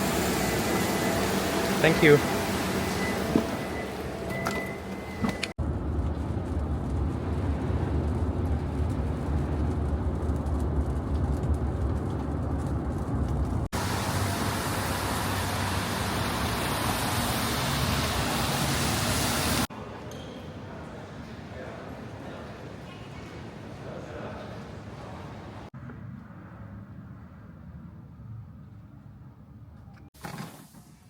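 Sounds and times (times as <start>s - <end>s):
vehicle cabin rumble: 3.0s - 14.4s.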